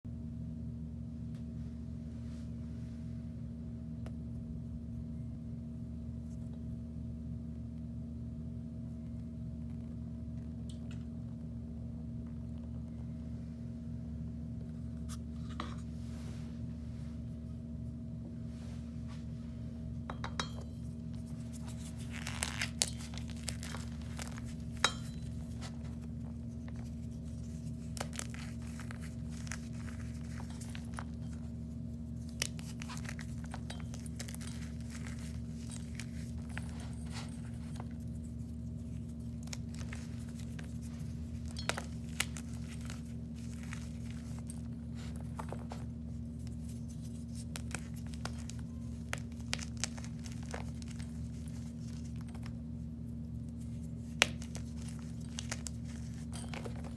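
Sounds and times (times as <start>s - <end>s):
low electrical hum: 0.0s - 56.9s
objects crinkling and tapping: 20.1s - 56.9s.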